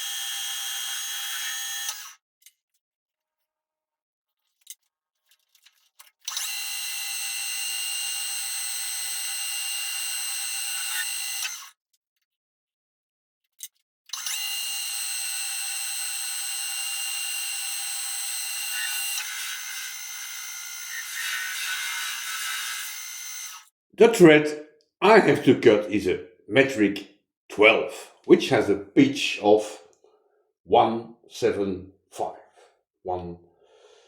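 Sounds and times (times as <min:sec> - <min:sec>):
metal lathe whining: 0:14.2 - 0:23.6.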